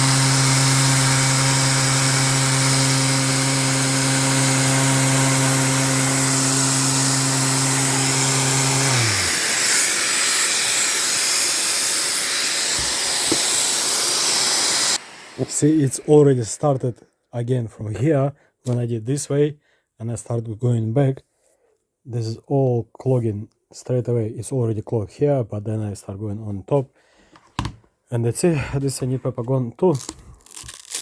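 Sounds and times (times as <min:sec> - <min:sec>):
electric sander motor hum: 0:00.0 - 0:16.2.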